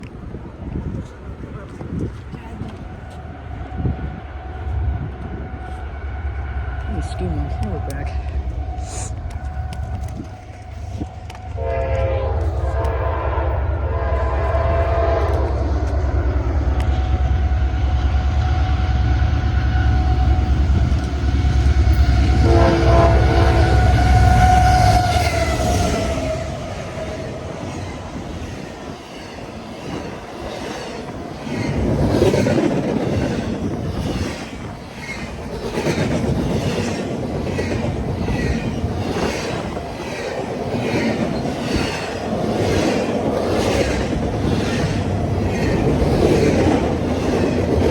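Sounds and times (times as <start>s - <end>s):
diesel locomotive engine running: 0.1s - 47.9s
locomotive horn: 11.4s - 15.6s, 18.7s - 26.9s.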